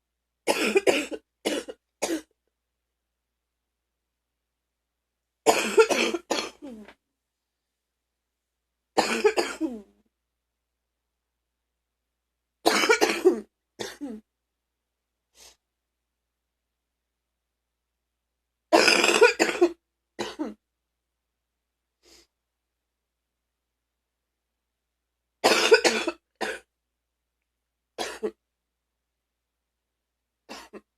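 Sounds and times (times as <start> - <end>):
person coughing deeply: 0.5 - 2.3, 5.5 - 6.9, 9.0 - 9.9, 12.7 - 14.2, 18.8 - 20.6, 25.4 - 26.7, 28.0 - 28.4, 30.5 - 30.9.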